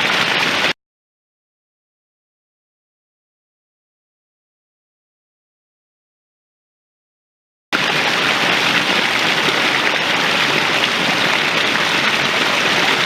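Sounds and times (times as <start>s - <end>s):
stream rushing over rocks: 0.0s - 0.8s, 7.8s - 13.0s.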